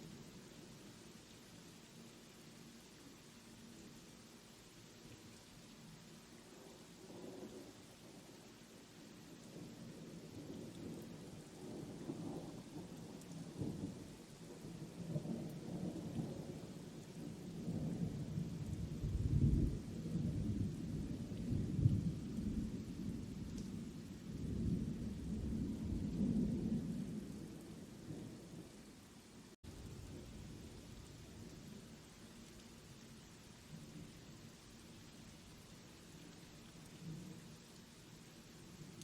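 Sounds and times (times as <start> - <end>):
faint rain hiss: 0.0 - 39.0.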